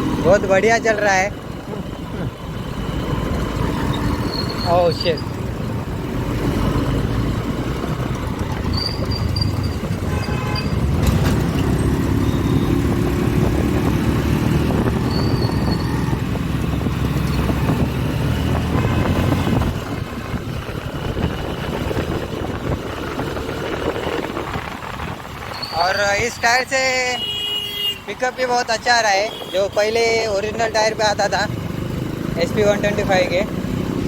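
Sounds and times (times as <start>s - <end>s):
motorcycle engine running: 0.0s - 25.7s
road noise rumble: 0.0s - 34.0s.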